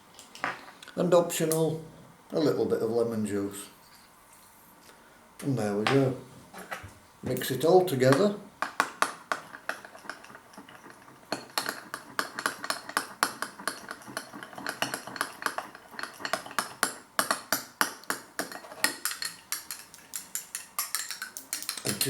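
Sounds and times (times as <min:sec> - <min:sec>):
spoon clinking against dish: 0:18.4 - 0:22.0.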